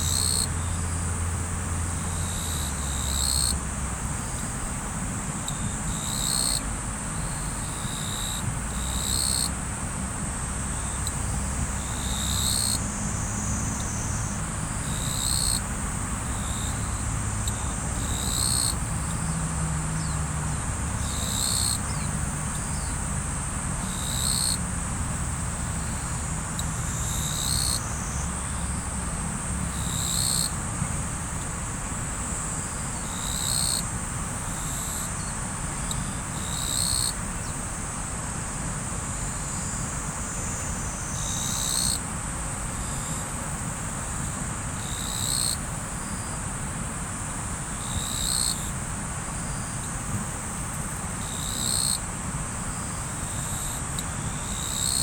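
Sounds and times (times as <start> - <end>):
insects droning: 0.0 - 55.0.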